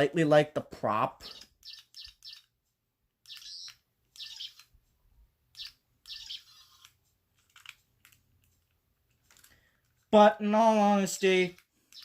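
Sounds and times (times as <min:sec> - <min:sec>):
small bird chirping: 0:01.2 - 0:02.6, 0:03.2 - 0:04.8, 0:05.5 - 0:07.0.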